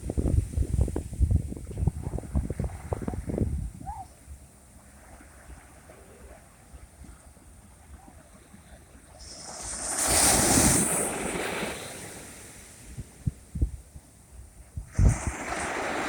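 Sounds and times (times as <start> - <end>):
wind buffeting microphone: 0.0 - 4.2, 9.8 - 16.0
sea waves crashing on shore: 4.8 - 13.5, 14.9 - 16.0.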